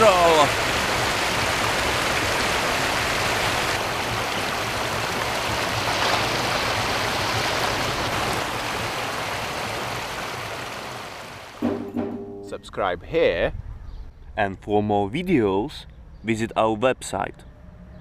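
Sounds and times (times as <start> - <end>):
river water rushing: 0.0 - 11.8.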